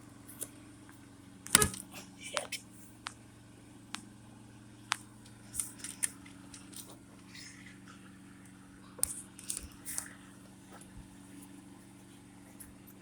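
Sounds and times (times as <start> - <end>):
steady low hum: 0.0 - 13.0
sharp clicks and light rattles: 4.9 - 7.6, 8.4 - 10.2.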